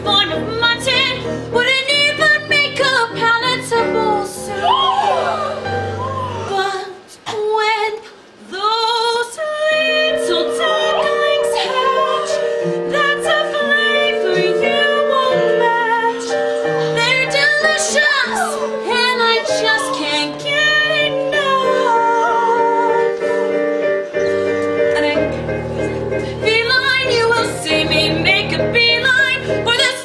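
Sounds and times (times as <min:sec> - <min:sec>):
woman singing: 0:00.0 - 0:05.0, 0:06.2 - 0:23.5, 0:24.8 - 0:25.4, 0:26.4 - 0:30.0
instrumental accompaniment: 0:10.1 - 0:30.0.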